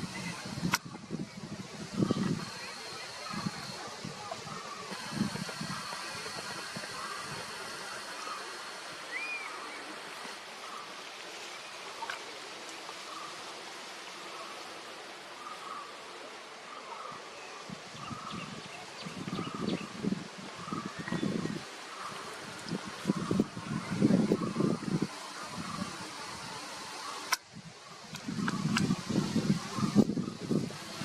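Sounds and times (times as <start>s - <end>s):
wind gusts on microphone: 0.0s - 8.1s, 17.6s - 31.0s
thin high whine: 0.0s - 10.9s, 22.0s - 27.4s
river water rushing: 0.0s - 17.5s, 21.3s - 29.2s.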